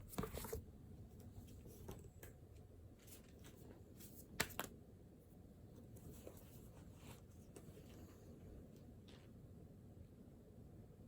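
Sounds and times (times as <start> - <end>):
light clicks and rustles at desk: 5.8 - 9.4.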